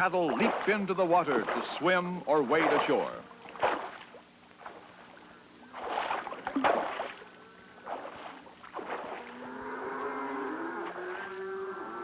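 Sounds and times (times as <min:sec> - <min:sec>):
cattle splashing into water: 0:00.0 - 0:05.1, 0:05.7 - 0:10.2.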